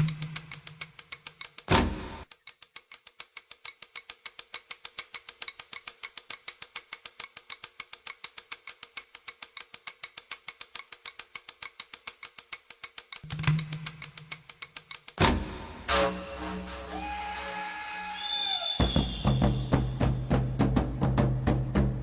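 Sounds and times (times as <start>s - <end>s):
fast percussive clicks: 0.0s - 15.9s.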